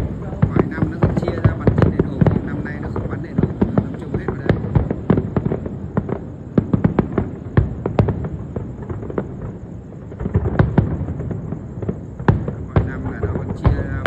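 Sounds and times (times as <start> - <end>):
fireworks bangs and cracks: 0.0 - 14.0.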